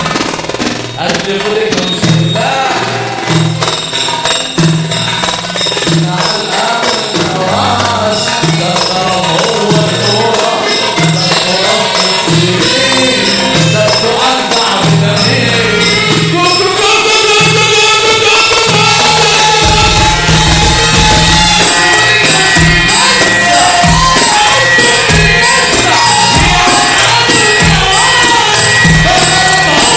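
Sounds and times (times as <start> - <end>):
person singing with echo: 1.0 - 3.6, 5.5 - 29.9
pulsing bass beat: 18.8 - 29.9.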